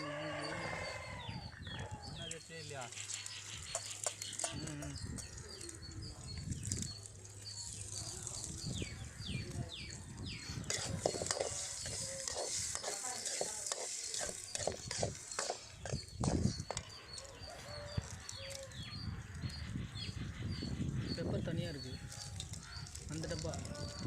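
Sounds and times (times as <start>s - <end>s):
spatula scraping in a pan: 10.4s - 16.9s.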